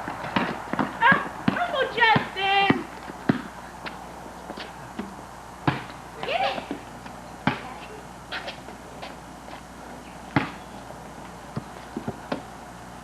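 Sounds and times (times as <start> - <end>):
basketball bouncing on hard court: 0.0 - 3.5, 5.0 - 6.0, 7.4 - 7.7, 10.3 - 10.6.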